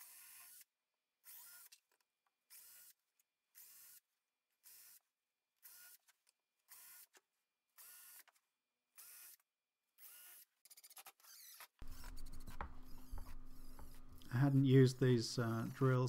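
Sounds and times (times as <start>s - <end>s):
cordless drill motor whining: 0.0s - 1.8s, 2.5s - 3.0s, 3.6s - 4.0s, 4.6s - 5.0s, 5.6s - 6.1s, 6.7s - 7.2s, 7.8s - 8.4s, 9.0s - 9.4s, 10.0s - 16.0s.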